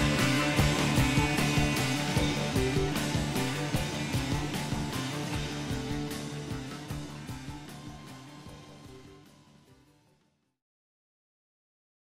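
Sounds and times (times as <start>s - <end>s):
plucked guitar: 0.0s - 9.2s
background music with steady beat: 0.0s - 10.3s.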